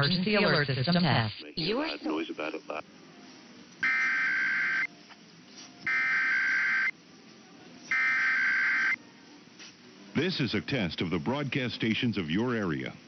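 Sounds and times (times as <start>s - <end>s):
raspy buzzing data tone: 3.8s - 4.9s, 5.8s - 6.9s, 7.9s - 9.0s.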